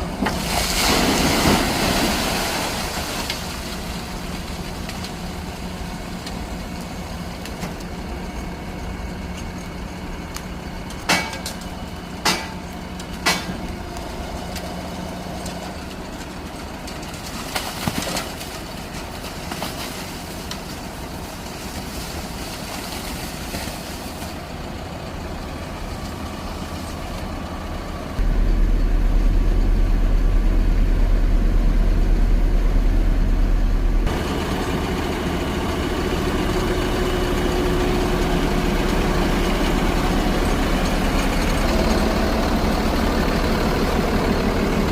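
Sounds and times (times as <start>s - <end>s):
street sweeper engine running: 0.0s - 44.9s
loud low drone: 27.8s - 44.9s.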